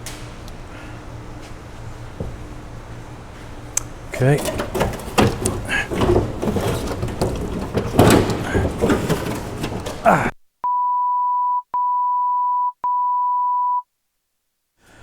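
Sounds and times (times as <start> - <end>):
truck parts clattering: 3.9 - 10.3
censor bleep tones: 10.6 - 13.9.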